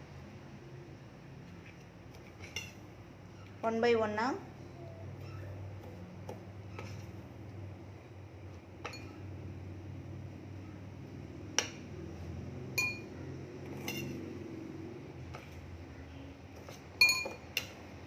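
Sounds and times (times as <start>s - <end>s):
low steady hum: 0.0s - 18.0s
utensils and dishes clinking: 12.8s - 14.4s, 16.6s - 17.8s.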